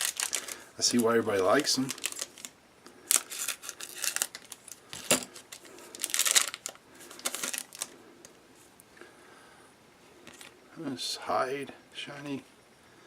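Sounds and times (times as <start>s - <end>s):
foil wrapper crinkling: 0.0s - 8.0s.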